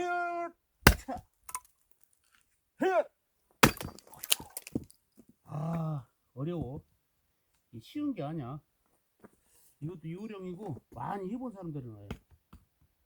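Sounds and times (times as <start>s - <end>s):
axe splitting logs: 0.8s - 1.7s, 3.6s - 4.9s
wood splintering: 0.9s - 1.7s, 3.6s - 4.9s.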